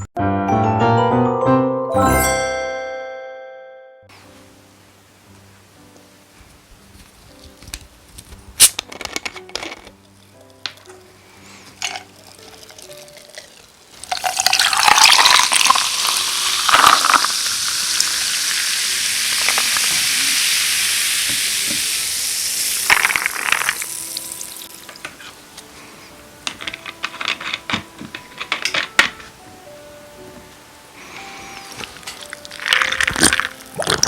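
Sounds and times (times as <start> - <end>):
sparkling water fizzing: 11.7 - 25.5, 31.6 - 34.0.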